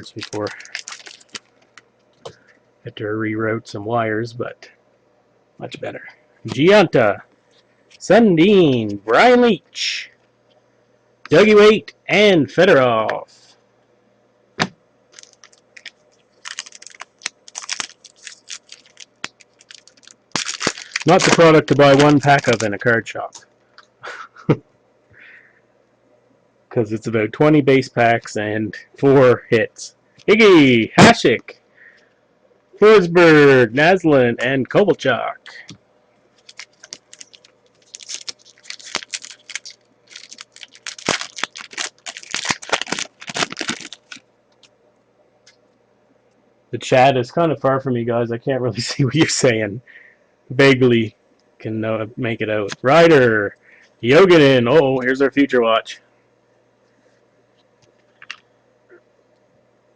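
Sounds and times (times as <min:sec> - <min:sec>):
wrapper crinkling and tearing: 0:00.0 - 0:01.8, 0:15.1 - 0:22.8, 0:36.4 - 0:44.2.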